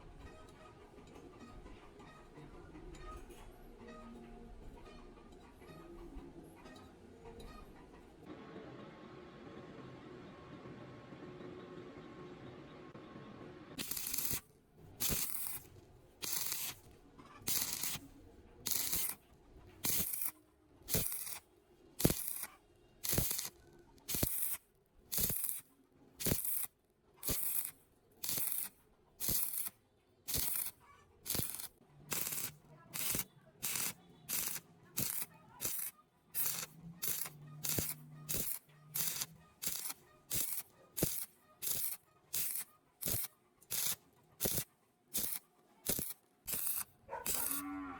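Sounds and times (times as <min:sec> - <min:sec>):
hand tool scraping metal pipe: 0:17.5 - 0:18.0, 0:31.3 - 0:44.6.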